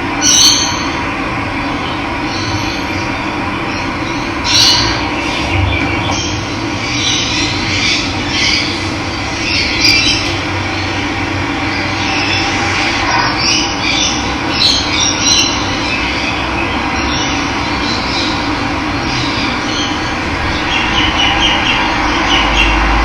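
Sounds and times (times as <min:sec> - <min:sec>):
birds chirping and calling: 0:00.1 - 0:01.0, 0:01.6 - 0:23.0.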